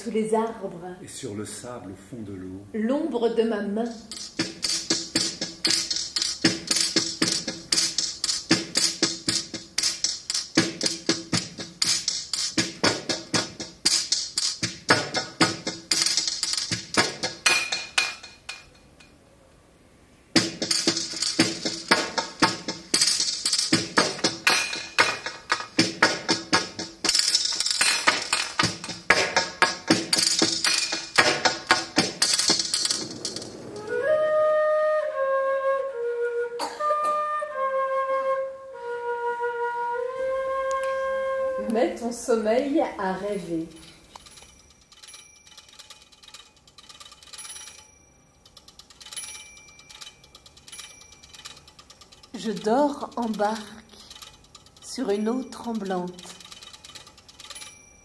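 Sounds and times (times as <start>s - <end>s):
small hand percussion strikes: 3.9s - 19.2s, 20.4s - 34.0s
flute-like woodwind melody: 33.8s - 42.0s.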